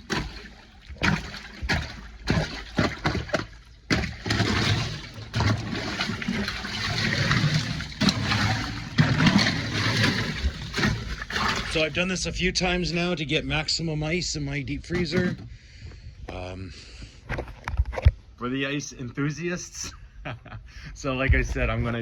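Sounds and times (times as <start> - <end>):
water running and splashing: 0.0 - 12.0.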